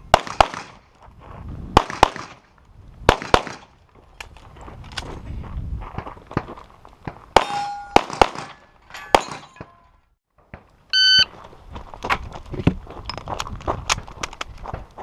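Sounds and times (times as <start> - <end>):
pistol shots: 0.1 - 0.8, 1.8 - 2.4, 3.1 - 3.7, 7.4 - 8.6
steel targets clanging: 7.4 - 10.0
electronic timer beep: 10.9 - 11.3.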